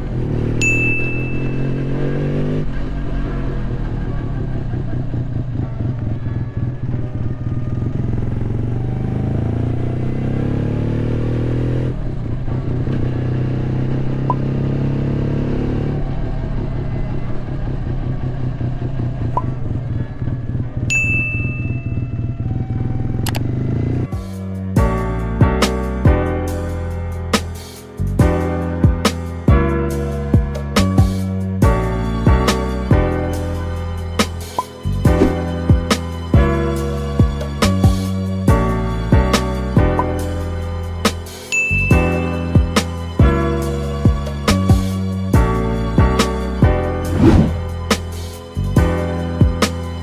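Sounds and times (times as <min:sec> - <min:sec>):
rotary engine revving: 0:00.0 - 0:20.9, 0:21.8 - 0:24.2, 0:47.0 - 0:48.0
high-pitched chirp: 0:00.7 - 0:01.8, 0:21.1 - 0:21.8.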